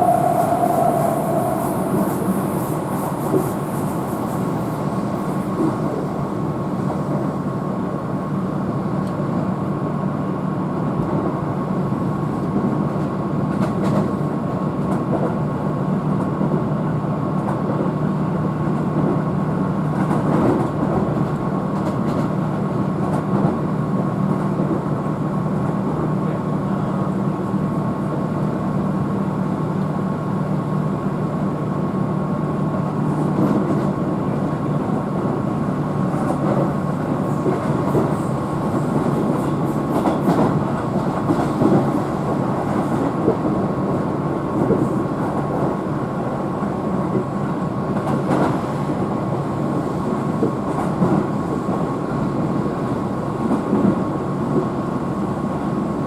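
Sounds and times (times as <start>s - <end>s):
train wheels rumbling on track: 0.0s - 56.0s
rail-joint clicks: 37.3s - 43.4s.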